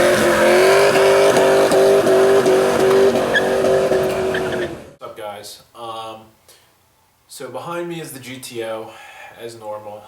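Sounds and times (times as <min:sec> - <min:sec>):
engine at high revs: 0:00.0 - 0:05.0.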